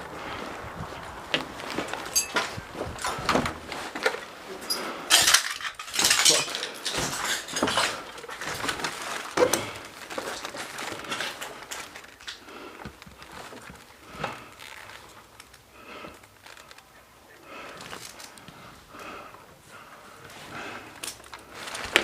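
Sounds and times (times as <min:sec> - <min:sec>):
footsteps: 0:00.0 - 0:16.8
gear and clothing rustling: 0:00.0 - 0:22.0.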